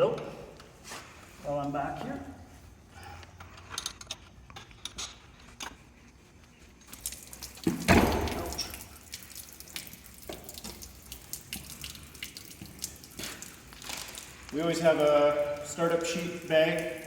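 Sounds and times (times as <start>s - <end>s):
water pouring from drain: 6.9s - 17.0s.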